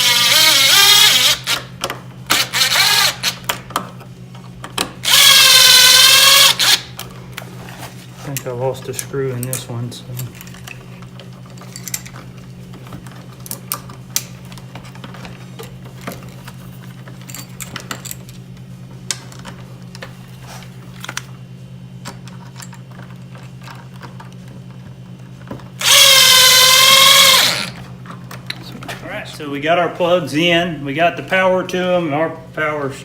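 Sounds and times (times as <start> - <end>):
power drill whining: 0.0 - 1.7, 2.3 - 3.4, 5.0 - 6.9, 25.8 - 27.8
steady low hum: 0.0 - 33.0.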